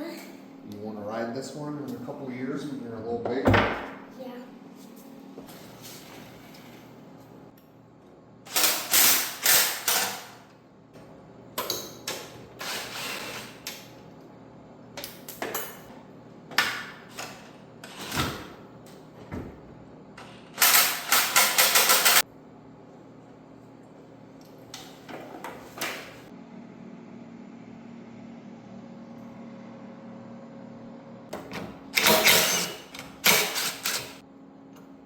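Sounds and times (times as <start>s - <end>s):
rapid mechanical clattering: 20.6s - 22.2s.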